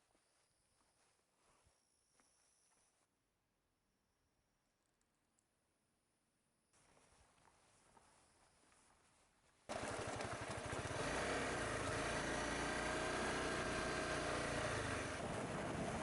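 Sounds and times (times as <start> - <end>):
motorcycle engine revving: 9.7 - 16.0.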